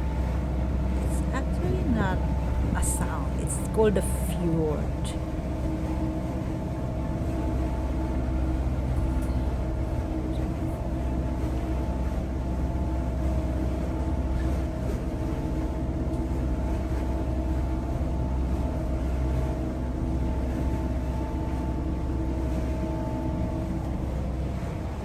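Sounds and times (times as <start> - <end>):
boat engines droning: 0.0 - 25.0.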